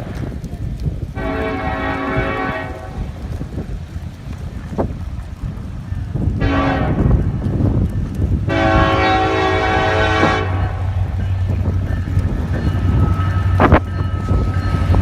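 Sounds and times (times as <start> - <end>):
low locomotive rumble: 0.0 - 15.0
locomotive air horn blasts: 1.2 - 3.0, 6.4 - 7.1, 8.5 - 11.0.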